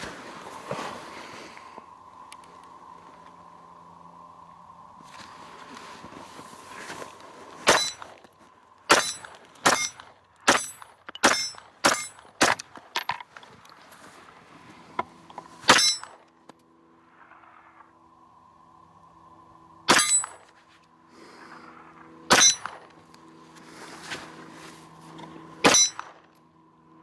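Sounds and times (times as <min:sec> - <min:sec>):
pistol shots: 0:08.9 - 0:12.6, 0:22.3 - 0:22.8, 0:25.6 - 0:26.1.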